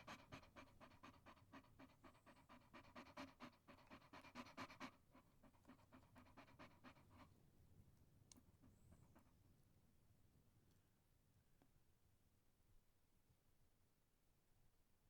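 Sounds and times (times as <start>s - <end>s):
dog panting: 0.0s - 7.4s.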